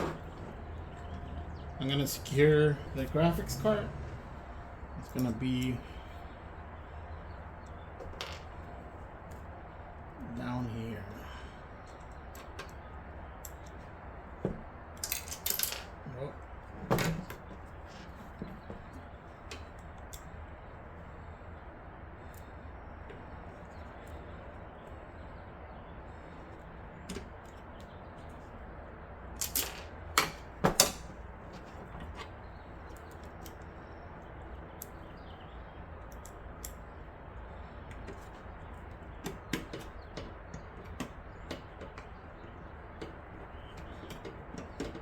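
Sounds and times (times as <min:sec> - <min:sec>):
computer parts clicking and knocking: 0:29.4 - 0:32.2.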